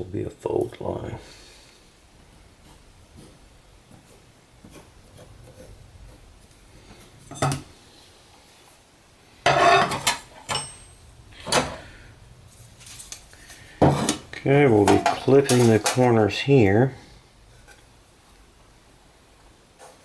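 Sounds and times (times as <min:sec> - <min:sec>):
metal clattering on a workbench: 0:07.3 - 0:07.7, 0:09.4 - 0:11.8, 0:13.8 - 0:16.1.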